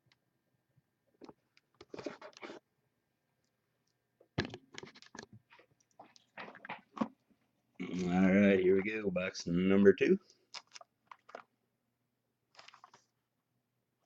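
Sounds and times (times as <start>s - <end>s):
box handling and crinkling: 12.5s - 13.2s.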